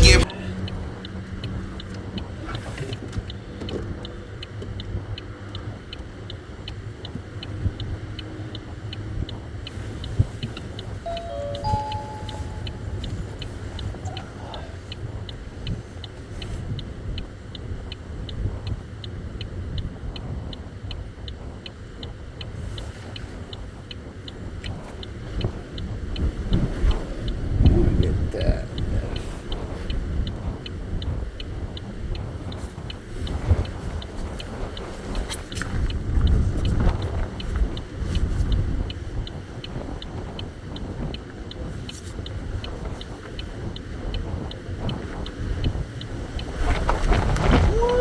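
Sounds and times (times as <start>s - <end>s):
short beeps: 0.0s - 0.3s, 11.1s - 13.2s.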